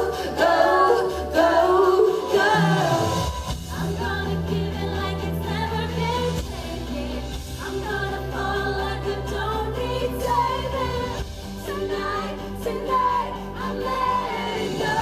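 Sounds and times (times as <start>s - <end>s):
backing music: 0.0s - 15.0s
woman singing pop: 0.0s - 15.0s.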